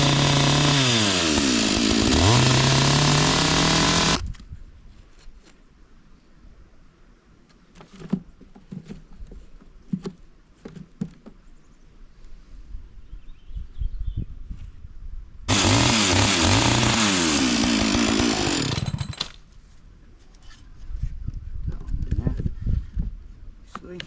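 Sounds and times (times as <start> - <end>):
chainsaw revving: 0.0 - 4.2, 15.5 - 19.4.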